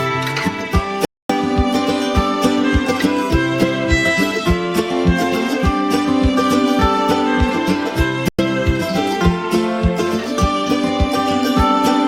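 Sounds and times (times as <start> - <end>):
strings and guitar music: 0.0 - 12.0.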